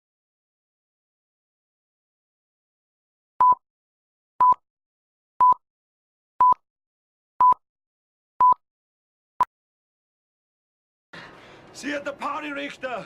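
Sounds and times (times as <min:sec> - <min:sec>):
short electronic beeps: 0:03.4 - 0:03.6, 0:05.4 - 0:05.6, 0:06.4 - 0:06.6, 0:08.4 - 0:08.6.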